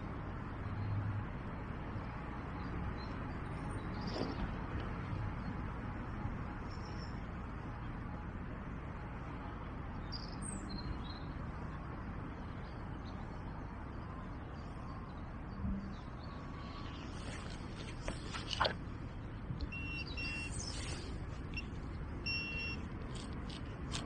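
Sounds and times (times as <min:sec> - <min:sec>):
outdoor background noise: 0:00.0 - 0:24.0
faint high bird chirps: 0:19.7 - 0:21.7.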